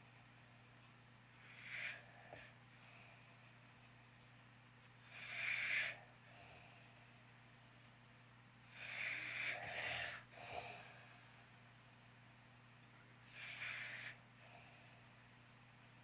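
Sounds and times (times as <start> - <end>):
person snoring: 5.1 - 6.0, 8.7 - 10.9, 13.3 - 14.2.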